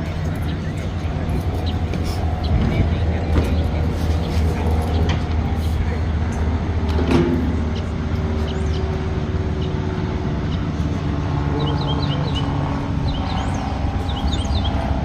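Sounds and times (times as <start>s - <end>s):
wind buffeting microphone: 0.0s - 15.0s
bird chirping: 10.4s - 15.0s.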